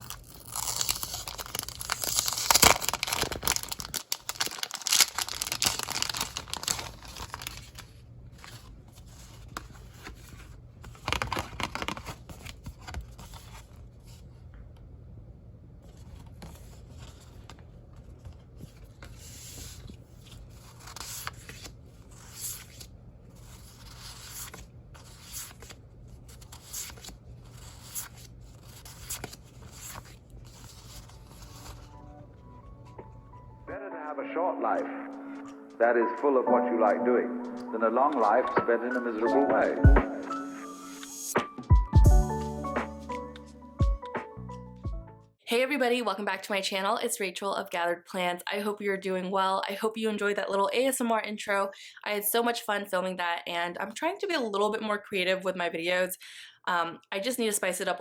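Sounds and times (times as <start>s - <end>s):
paper and plastic crinkling: 0.0s - 14.2s, 15.8s - 33.1s.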